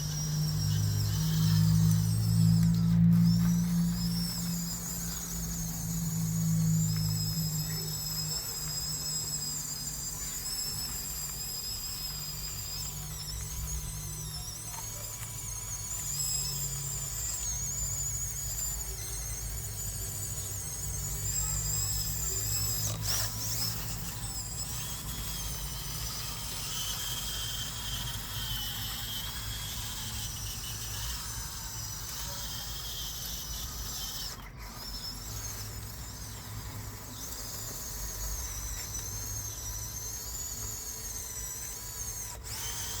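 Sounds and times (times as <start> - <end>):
steady low hum: 0.0 - 43.0
toy motors whining: 0.0 - 43.0.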